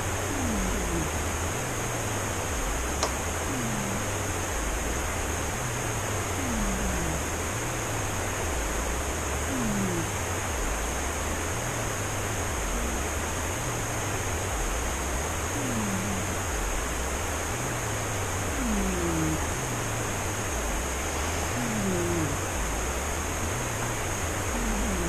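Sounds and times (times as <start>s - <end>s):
cat snoring: 0.2s - 1.2s, 3.0s - 4.3s, 5.5s - 7.4s, 9.5s - 10.2s, 12.7s - 13.8s, 15.5s - 16.5s, 18.5s - 19.9s, 20.9s - 22.9s, 24.5s - 25.0s.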